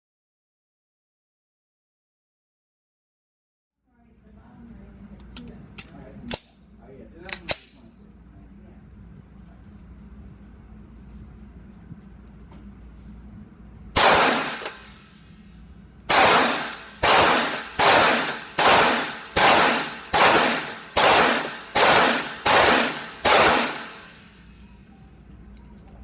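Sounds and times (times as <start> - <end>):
handgun shots: 14.0 - 14.9, 16.1 - 24.3.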